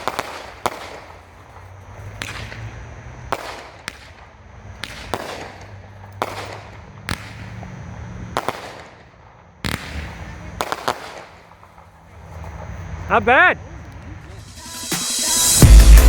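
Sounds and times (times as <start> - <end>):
fireworks cake firing: 0.0 - 12.2
sharp report with hiss: 14.3 - 16.0.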